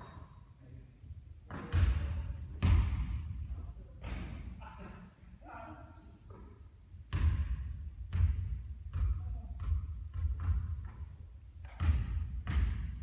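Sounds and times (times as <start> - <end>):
shoe squeaks: 5.9 - 6.8, 7.5 - 8.9, 10.6 - 11.4
basketball bouncing on hard floor: 7.1 - 11.0, 11.6 - 13.0.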